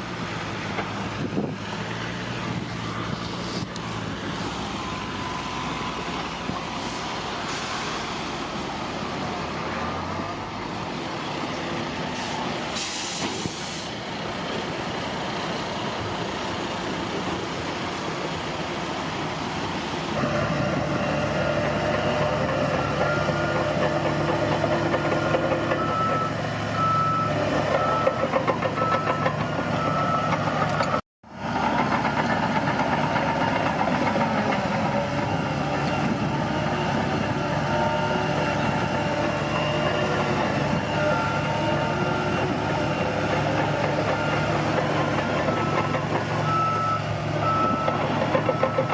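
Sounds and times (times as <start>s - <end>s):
bulldozer diesel engine running: 14.0s - 48.9s
reversing alarm beeping: 25.2s - 30.8s, 40.7s - 48.9s.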